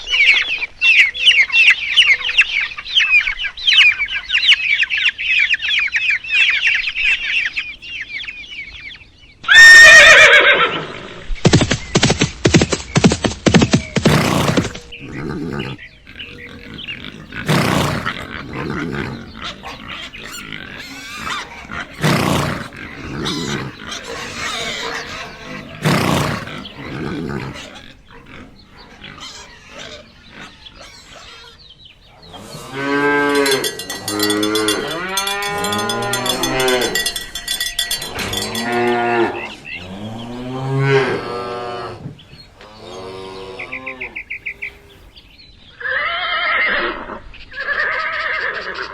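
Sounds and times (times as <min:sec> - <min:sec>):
farm animals calling: 0:00.0 - 0:11.2, 0:13.7 - 0:48.9
cow mooing: 0:14.5 - 0:27.6, 0:32.2 - 0:42.0.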